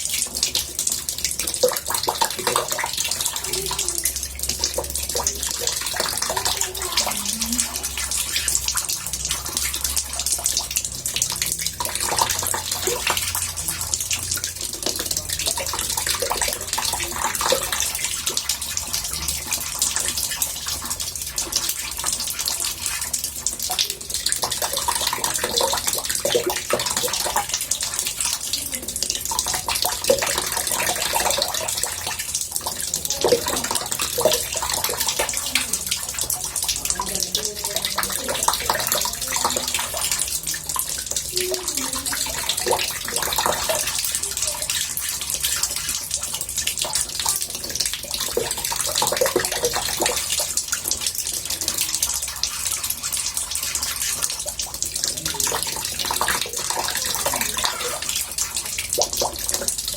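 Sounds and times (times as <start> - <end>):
bubbling gurgles: 0.0 - 59.9
water running into bathtub: 0.0 - 59.9.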